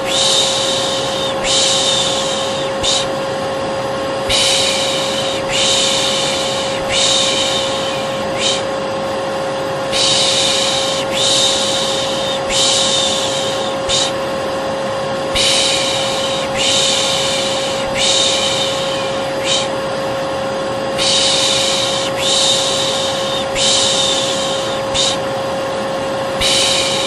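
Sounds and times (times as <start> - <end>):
person shushing: 0.0 - 3.2, 4.3 - 8.8, 9.9 - 14.2, 15.3 - 19.8, 21.0 - 25.3, 26.4 - 27.0
vacuum cleaner whining: 0.0 - 27.0.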